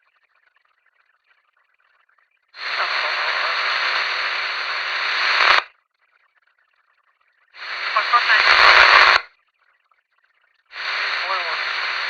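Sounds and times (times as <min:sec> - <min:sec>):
radio static hiss: 0:02.6 - 0:05.7, 0:07.6 - 0:09.3, 0:10.7 - 0:12.0.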